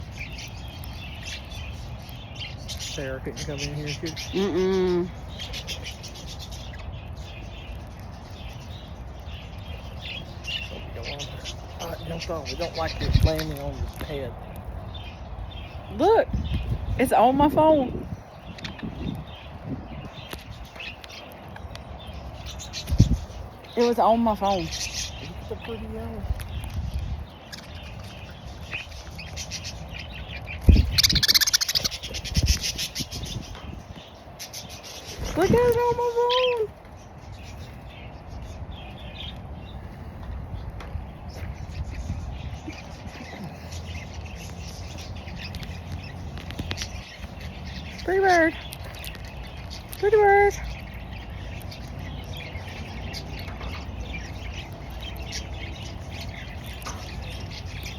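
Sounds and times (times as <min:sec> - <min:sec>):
budgerigar chattering: 0:30.7 - 0:33.3.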